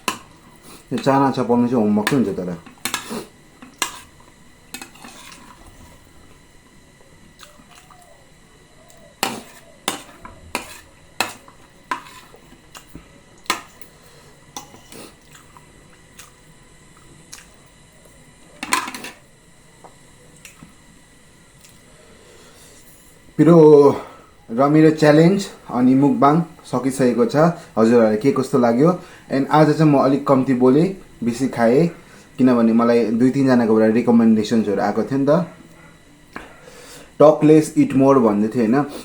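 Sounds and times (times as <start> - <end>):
cutlery clinking against a bowl: 2.1 - 4.1, 9.2 - 12.9.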